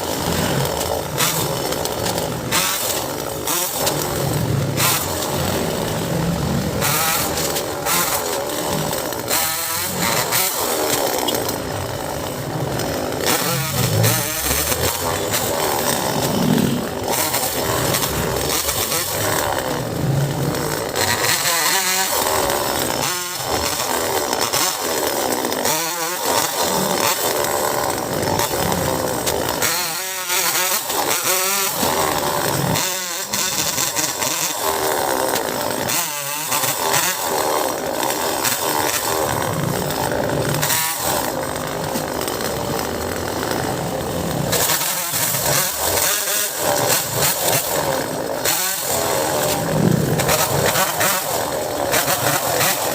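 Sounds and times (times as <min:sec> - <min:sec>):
chainsaw cutting wood: 0:00.0 - 0:52.9.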